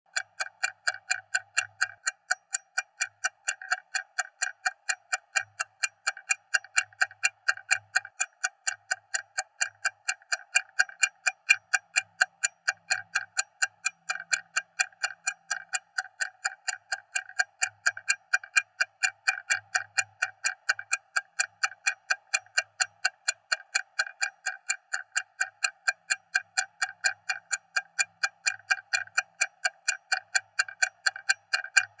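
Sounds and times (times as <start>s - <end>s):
stopwatch ticking: 0.1s - 32.0s.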